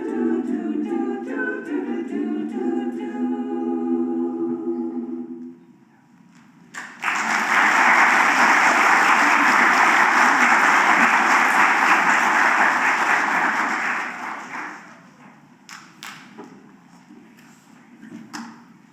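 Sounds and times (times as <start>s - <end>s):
audience applauding: 6.7s - 15.1s.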